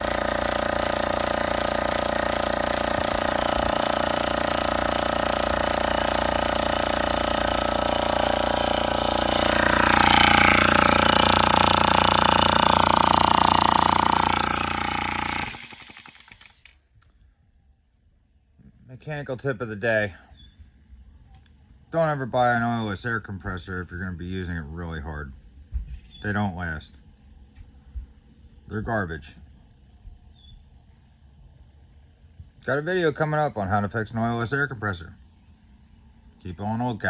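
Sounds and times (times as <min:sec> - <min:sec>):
air compressor pump running: 0:00.0 - 0:16.8.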